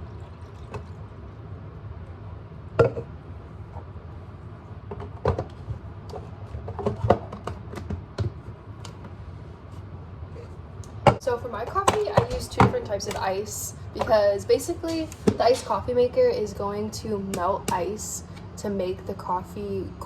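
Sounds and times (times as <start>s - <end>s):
low steady hum: 0.0s - 20.0s
kitchen items knocking on counter: 11.8s - 13.2s.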